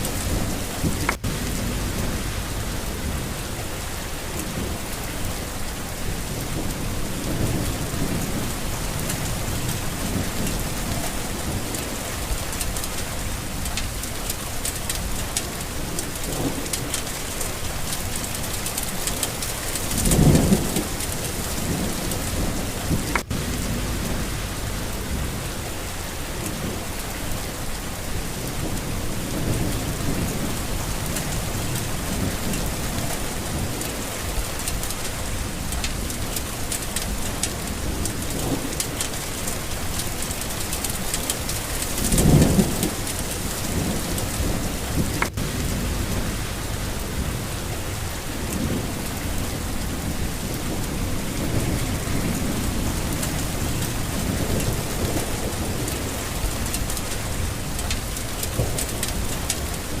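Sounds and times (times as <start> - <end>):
steady rain falling: 0.0 - 60.0
thunder rumbling: 0.0 - 60.0.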